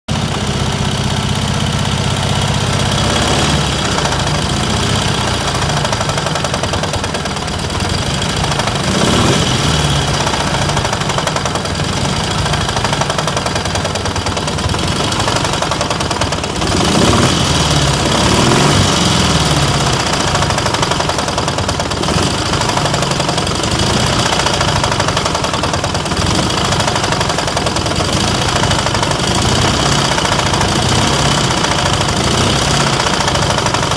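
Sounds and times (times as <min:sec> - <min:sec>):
motorcycle engine running and revving: 0:00.1 - 0:33.9.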